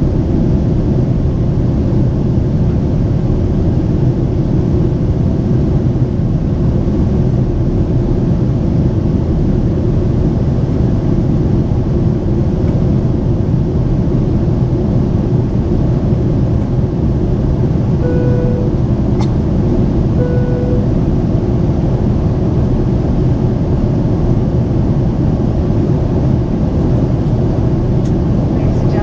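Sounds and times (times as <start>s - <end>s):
airliner cabin rumble: 0.0s - 29.0s
short chime tone: 18.0s - 18.8s, 20.2s - 21.0s.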